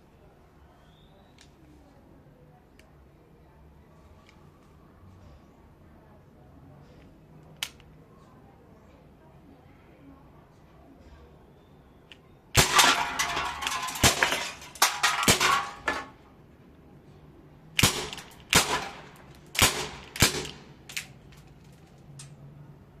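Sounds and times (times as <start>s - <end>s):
airsoft revolver shots: 17.8s - 21.1s.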